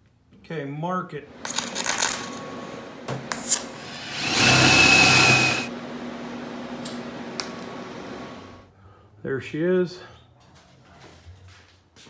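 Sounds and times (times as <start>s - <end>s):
power tool whining: 1.4s - 8.6s.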